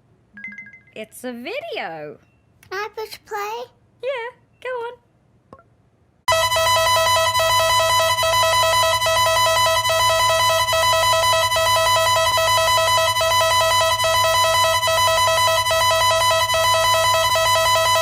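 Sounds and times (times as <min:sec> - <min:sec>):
emergency alert alarm tone: 0:06.3 - 0:18.0.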